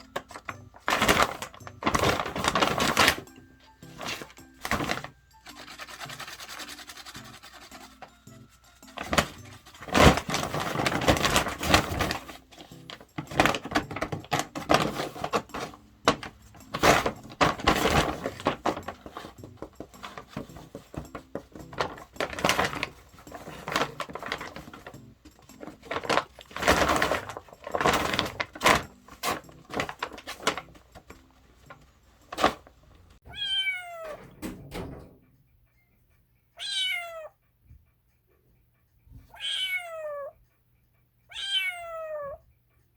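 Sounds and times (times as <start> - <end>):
paper bag crinkling: 0.0 - 33.2
cat meowing: 33.2 - 34.3, 36.6 - 37.4, 39.2 - 40.4, 41.3 - 42.5.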